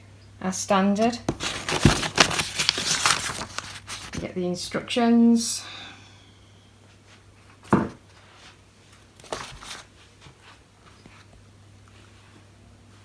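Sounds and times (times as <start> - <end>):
packaging rustling: 1.2 - 4.2, 9.0 - 9.9.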